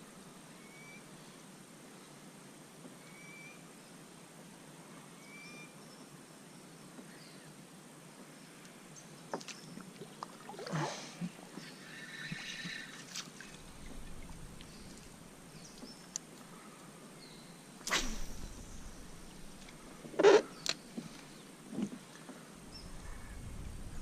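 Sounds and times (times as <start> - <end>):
water lapping and knocks: 12.3 - 15.9
splash-like sweep: 17.9 - 19.7.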